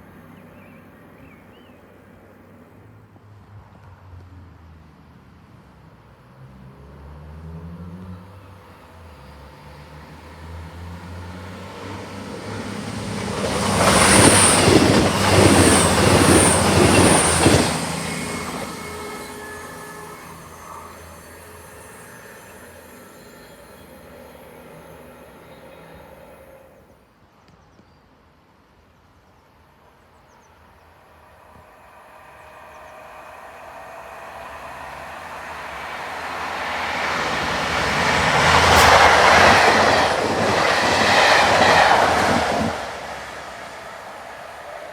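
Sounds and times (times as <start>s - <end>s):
train passing close by: 5.4s - 27.1s, 30.0s - 44.9s
high wheel squeal: 11.3s - 26.9s, 31.0s - 44.9s.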